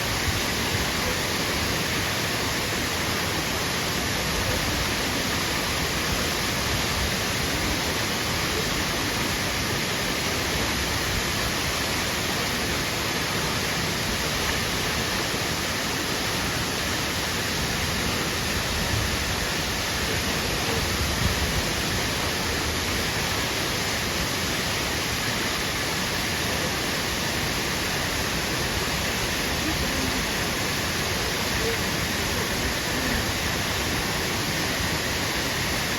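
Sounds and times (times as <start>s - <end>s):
waterfall rushing: 0.0s - 35.9s.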